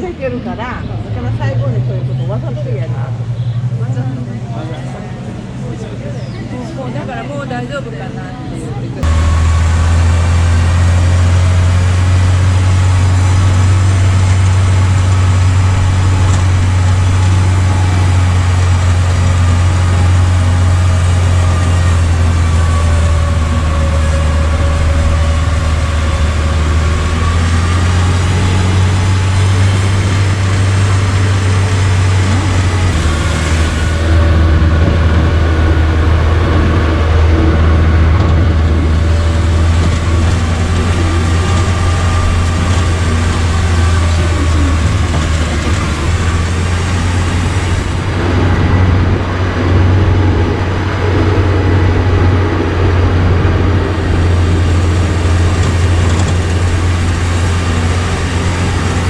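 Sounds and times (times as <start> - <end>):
engine running steadily: 0.0 - 59.0.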